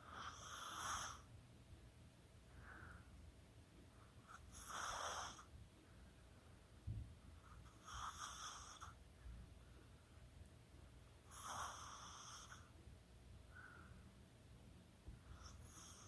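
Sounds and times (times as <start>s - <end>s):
small dog snoring: 0.0s - 1.3s, 4.3s - 5.5s, 7.6s - 9.0s, 11.2s - 12.7s, 15.3s - 16.0s.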